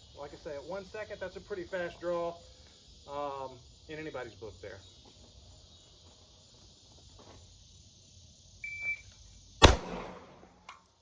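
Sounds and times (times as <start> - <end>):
pistol shot: 9.6 - 10.7.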